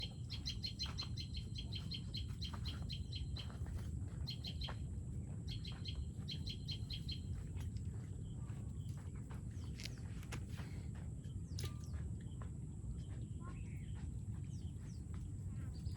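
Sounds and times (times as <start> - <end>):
bird chirping: 0.0 - 3.6, 5.5 - 7.4.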